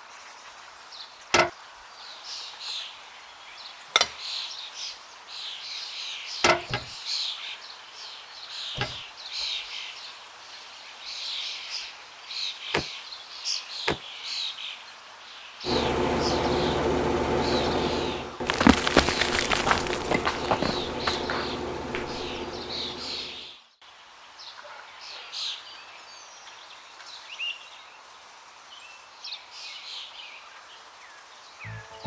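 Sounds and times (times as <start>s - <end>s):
sharp short knocks: 6.5s - 6.9s, 8.8s - 9.0s
birds chirping: 15.7s - 23.6s, 31.6s - 32.0s.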